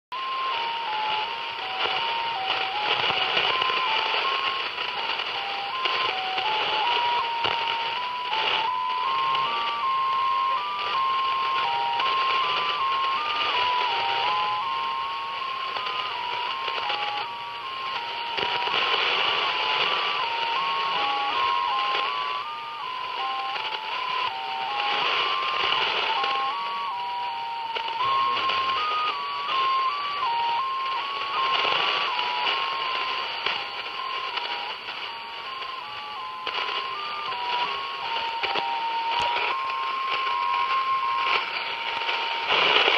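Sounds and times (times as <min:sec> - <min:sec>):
hopping data signal tone: 0:00.1 - 0:42.9
radio band hiss: 0:00.1 - 0:42.9.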